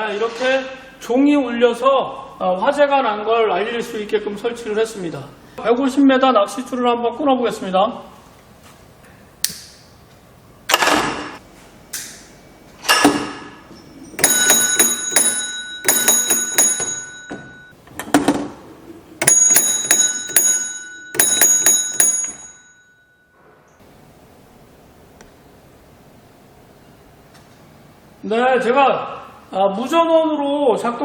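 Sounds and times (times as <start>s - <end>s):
alarm bell ringing: 14.2s - 17.8s, 19.2s - 23.4s
sharp knocks: 14.2s - 18.5s, 19.2s - 22.6s.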